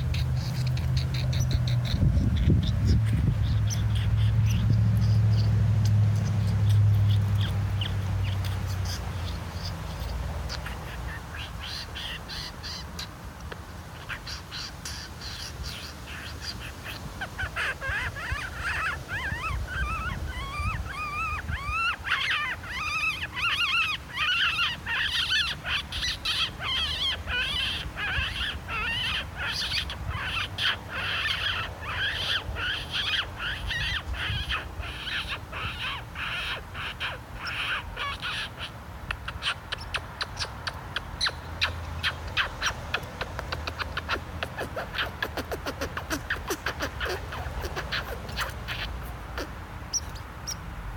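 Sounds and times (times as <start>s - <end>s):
small animals chirping and chattering: 0.0s - 50.7s.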